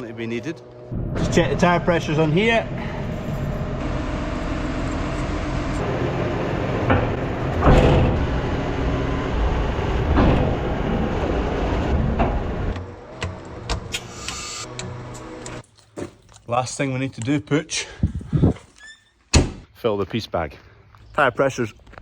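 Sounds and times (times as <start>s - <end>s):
farm vehicle engine running: 0.0s - 13.8s
knocks and clunks: 6.8s - 8.8s, 9.8s - 13.9s.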